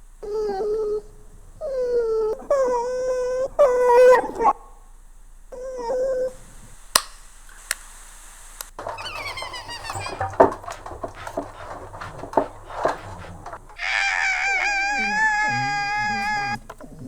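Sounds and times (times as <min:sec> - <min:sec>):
dog-like whimpering cries: 0:00.2 - 0:04.6, 0:05.6 - 0:06.4, 0:08.8 - 0:17.0.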